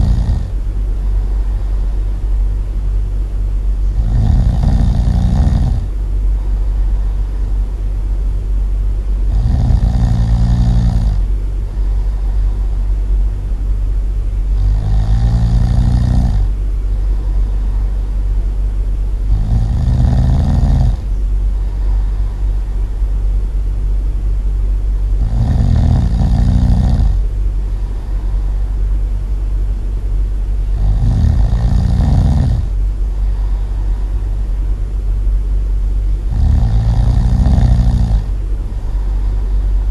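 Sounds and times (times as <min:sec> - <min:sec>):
loud snoring: 0:00.0 - 0:00.6, 0:03.9 - 0:06.0, 0:09.2 - 0:12.8, 0:14.5 - 0:18.0, 0:19.2 - 0:22.6, 0:25.2 - 0:28.7, 0:30.7 - 0:34.2, 0:36.2 - 0:39.9
steady low hum: 0:00.0 - 0:39.9.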